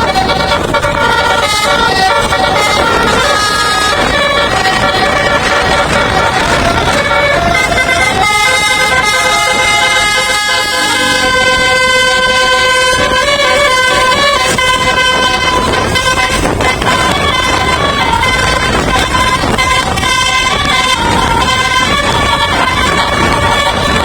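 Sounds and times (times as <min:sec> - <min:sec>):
loud steady noisy background: 0:00.0 - 0:24.0
musical air horn playing a tune: 0:00.0 - 0:24.0.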